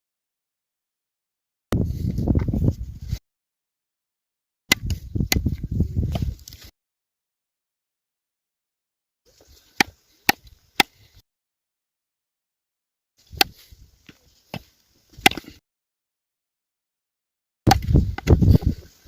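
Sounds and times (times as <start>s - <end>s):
blade chopping wood: 4.7s - 5.5s, 9.8s - 11.1s, 14.5s - 15.6s, 17.7s - 18.4s.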